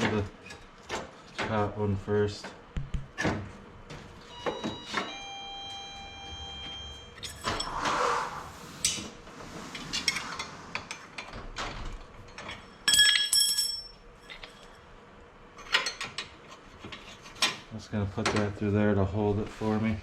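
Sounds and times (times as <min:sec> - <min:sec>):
metal parts clinking and scraping: 0:12.2 - 0:14.8.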